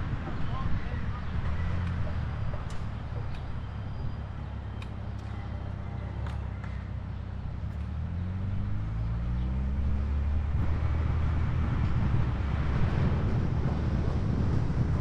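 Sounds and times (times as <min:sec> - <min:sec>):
vehicle engine hum rising: 0:00.0 - 0:15.0
steady rushing noise: 0:10.2 - 0:15.0.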